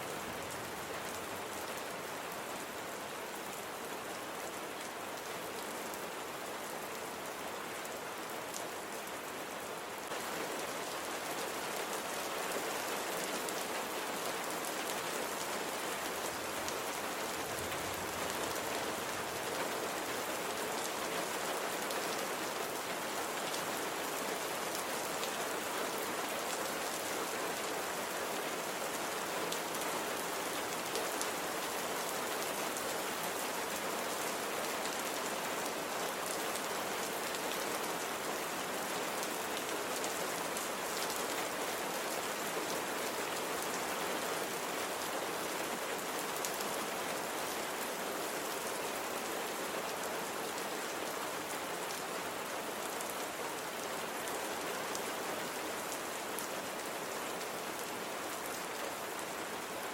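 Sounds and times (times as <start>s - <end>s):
rain falling on a surface: 0.0s - 59.9s.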